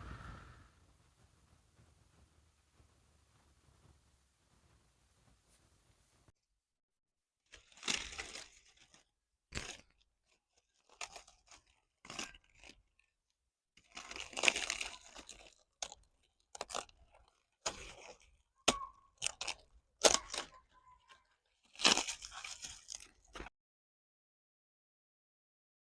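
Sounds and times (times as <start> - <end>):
crunching and crackling bursts: 13.8 - 23.5.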